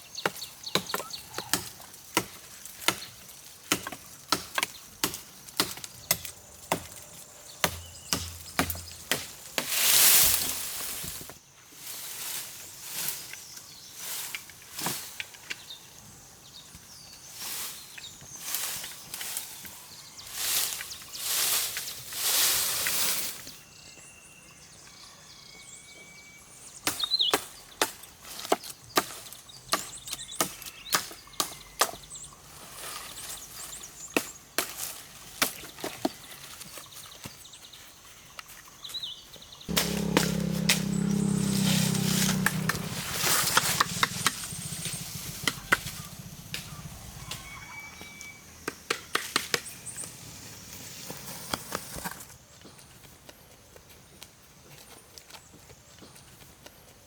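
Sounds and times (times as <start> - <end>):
low rumble: 39.7 - 48.7
faint high chirps: 39.8 - 48.8.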